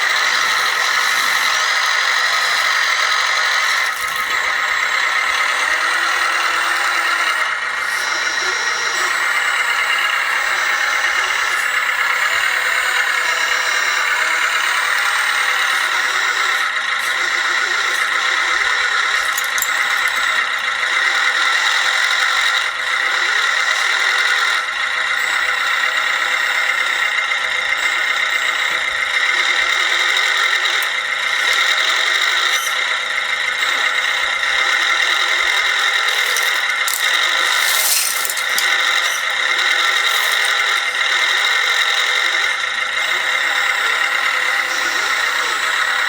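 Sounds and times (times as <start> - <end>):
small motors whining: 0.0 - 46.0
rattling and scraping: 3.8 - 4.4, 19.2 - 20.7, 35.8 - 41.0.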